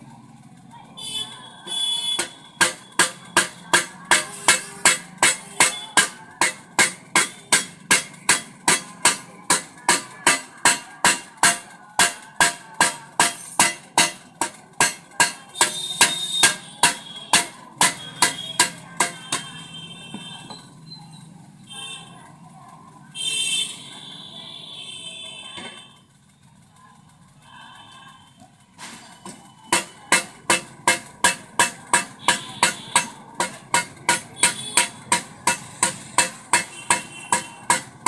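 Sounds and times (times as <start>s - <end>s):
hammer striking metal: 1.8s - 19.8s, 29.7s - 38.0s.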